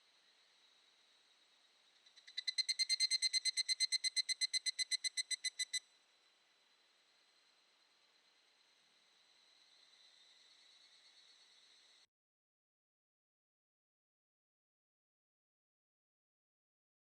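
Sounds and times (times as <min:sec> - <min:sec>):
cicada calling: 0:02.2 - 0:05.8.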